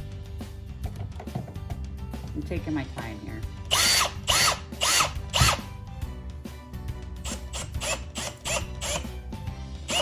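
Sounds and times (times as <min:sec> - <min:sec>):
drill motor whirring in pulses: 0:03.7 - 0:05.7, 0:07.2 - 0:09.2.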